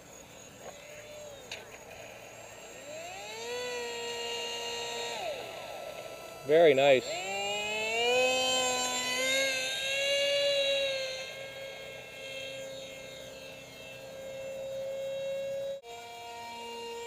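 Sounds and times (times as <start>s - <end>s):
model plane motor whining: 0.0s - 17.0s.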